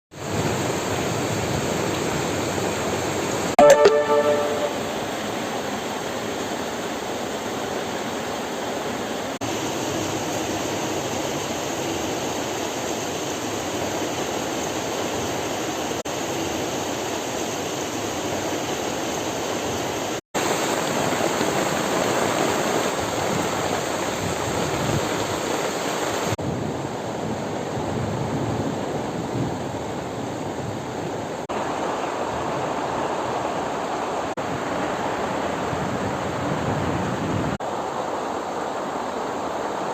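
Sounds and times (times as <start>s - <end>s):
heavy rain pouring: 19.6s - 33.6s
strong wind: 22.7s - 38.1s.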